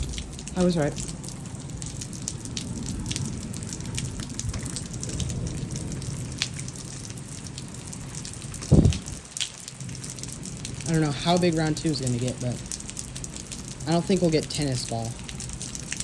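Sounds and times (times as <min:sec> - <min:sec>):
hailstones ticking: 0:00.0 - 0:16.0
rain hissing: 0:00.0 - 0:16.0
low thump: 0:08.6 - 0:09.2.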